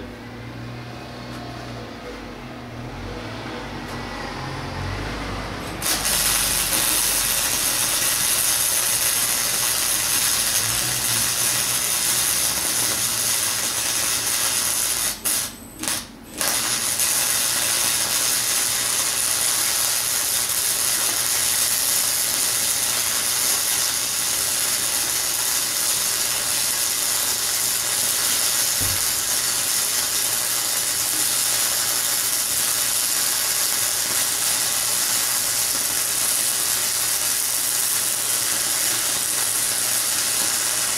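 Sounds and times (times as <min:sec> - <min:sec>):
welding arc crackling: 0:05.6 - 0:40.9.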